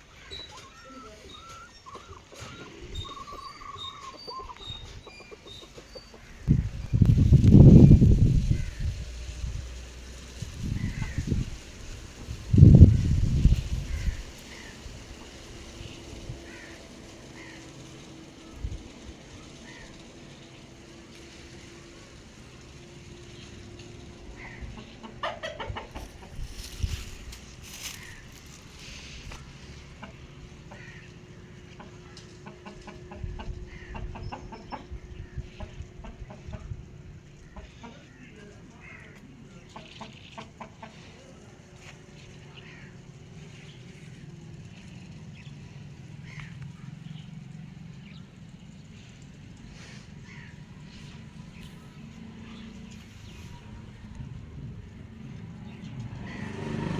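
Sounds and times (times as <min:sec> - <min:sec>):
chicken chirp: 0:00.1 - 0:07.0, 0:24.6 - 0:27.2
chicken clucking: 0:00.3 - 0:08.0, 0:24.2 - 0:31.0, 0:31.6 - 0:35.0, 0:37.4 - 0:38.8, 0:39.6 - 0:41.9.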